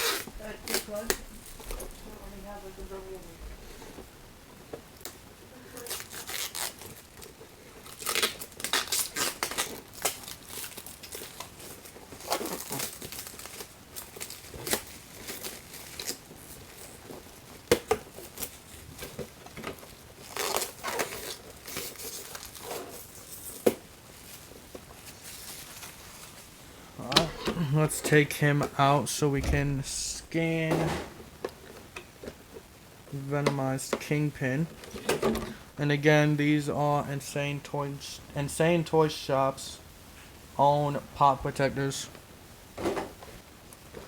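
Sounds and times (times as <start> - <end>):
plastic packaging crinkling and tearing: 0.0 - 2.0, 5.7 - 27.8.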